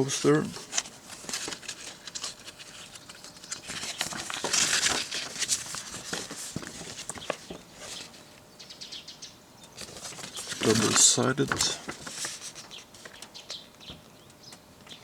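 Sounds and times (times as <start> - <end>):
paper rustling and crinkling: 0.0 - 8.4, 9.8 - 13.3.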